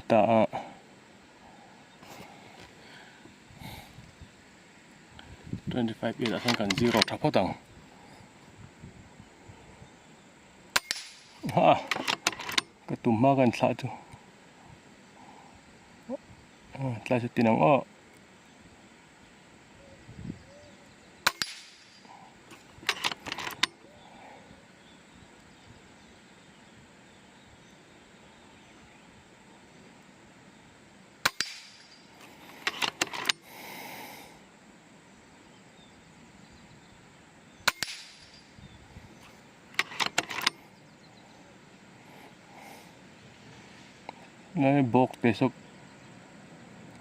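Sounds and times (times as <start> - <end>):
metallic clicks of rifle action: 6.2 - 7.2, 10.7 - 12.8, 21.2 - 23.8, 31.2 - 33.4, 37.6 - 38.4, 39.7 - 40.6
air rifle shots: 10.7 - 11.4, 21.2 - 22.0, 31.2 - 32.0, 37.6 - 38.4.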